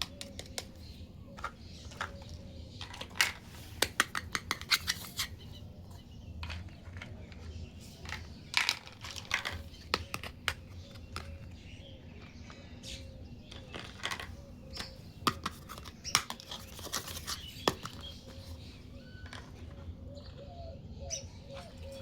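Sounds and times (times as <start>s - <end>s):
plastic toy pieces clicking: 2.8s - 5.3s, 8.0s - 11.4s.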